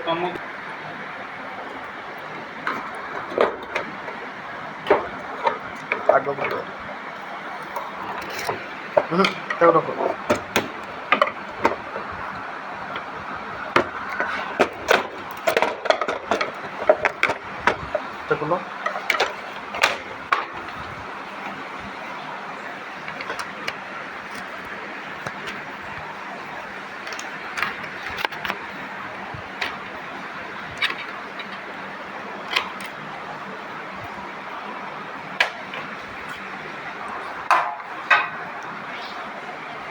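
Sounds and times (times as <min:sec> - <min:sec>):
knocks and clatter of machine parts: 0:02.6 - 0:06.7, 0:08.1 - 0:12.2, 0:13.7 - 0:20.9
tools and parts clinking: 0:07.6 - 0:12.0, 0:18.8 - 0:20.8.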